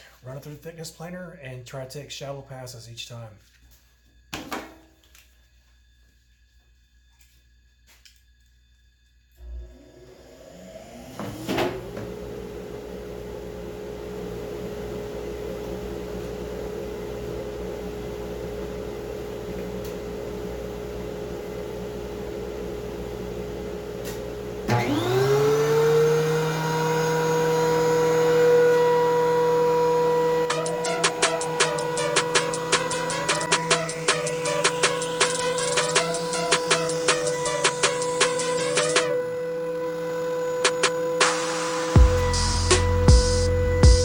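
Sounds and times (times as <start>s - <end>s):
louder motor with rising whine: 9.3s - 15.1s, 24.6s - 44.0s
electric motor humming: 24.7s - 44.0s.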